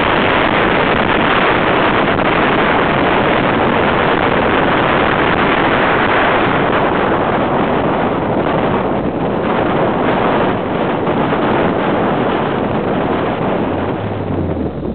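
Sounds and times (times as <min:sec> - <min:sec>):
car running and road noise: 0:00.0 - 0:14.9
wind rush on microphone: 0:00.0 - 0:14.9.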